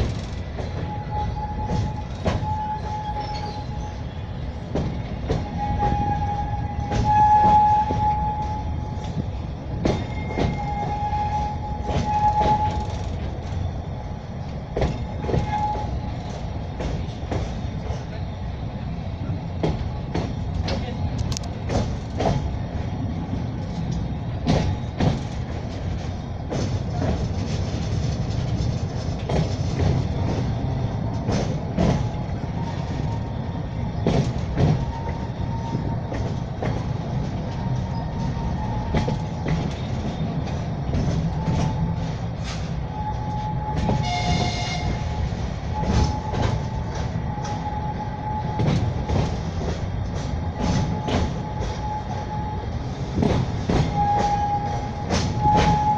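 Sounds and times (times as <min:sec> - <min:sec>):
wheels clicking over rail joints: 0:00.0 - 0:03.8, 0:04.6 - 0:18.2
train rumbling: 0:00.0 - 0:55.9
train horn blast: 0:00.8 - 0:04.1, 0:05.3 - 0:09.2, 0:10.1 - 0:13.1, 0:15.2 - 0:16.1, 0:42.6 - 0:49.2, 0:50.6 - 0:55.9.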